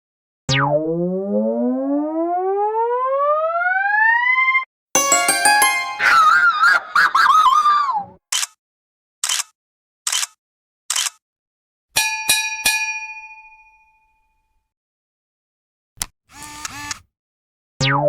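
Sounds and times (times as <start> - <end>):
bell-like dings: 5.0 - 6.8, 12.0 - 14.5.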